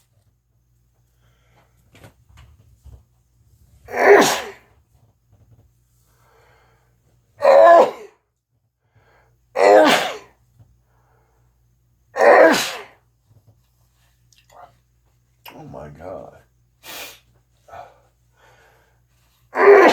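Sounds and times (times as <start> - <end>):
person sneezing: 3.9 - 4.6, 9.6 - 10.4, 12.2 - 13.0, 19.6 - 19.9.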